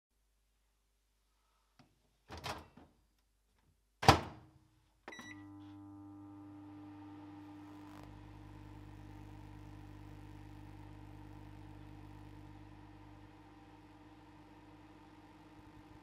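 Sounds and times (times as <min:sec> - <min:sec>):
brief beep: 0:05.1 - 0:05.5
microwave oven humming: 0:05.1 - 0:16.0.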